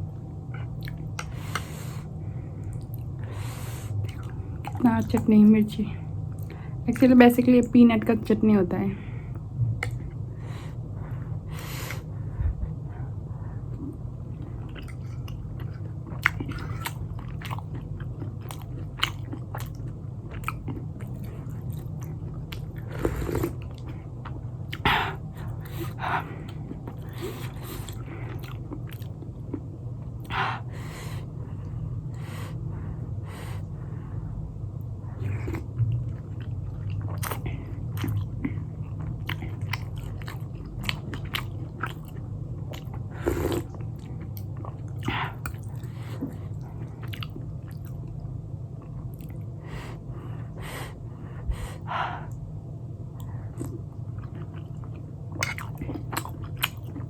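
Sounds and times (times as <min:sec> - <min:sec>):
steady low hum: 0:00.0 - 0:57.0
close-up chewing: 0:00.5 - 0:03.2, 0:03.9 - 0:05.2, 0:13.7 - 0:30.8, 0:34.8 - 0:49.5, 0:53.2 - 0:57.0.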